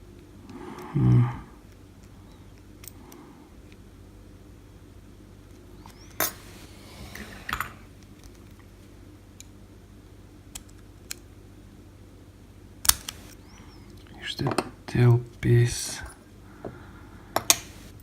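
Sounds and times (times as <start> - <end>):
padlock clicking: 12.8 - 13.4.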